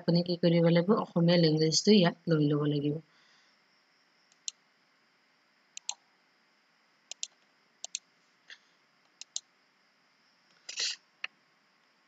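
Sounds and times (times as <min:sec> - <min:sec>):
mouse button clicking: 0:04.3 - 0:04.6, 0:05.8 - 0:06.0, 0:07.1 - 0:08.0, 0:09.2 - 0:09.4.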